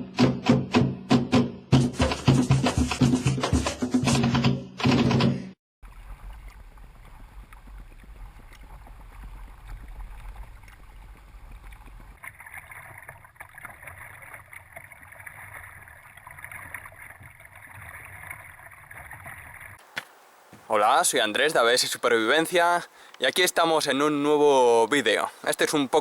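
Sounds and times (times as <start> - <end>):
flowing water hiss: 19.8 - 26.0.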